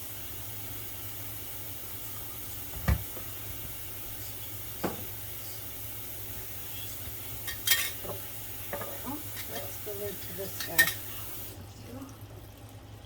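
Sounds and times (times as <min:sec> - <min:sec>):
tap water running into bowl: 0:04.7 - 0:05.2, 0:06.2 - 0:12.9.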